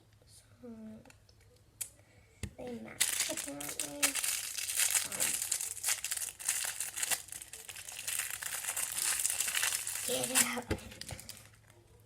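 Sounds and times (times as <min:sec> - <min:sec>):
packaging crinkling: 0:03.0 - 0:11.7.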